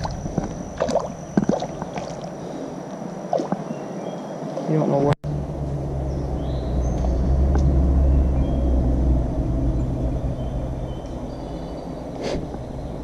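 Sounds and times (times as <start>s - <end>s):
vehicle engine passing by: 5.2s - 13.0s.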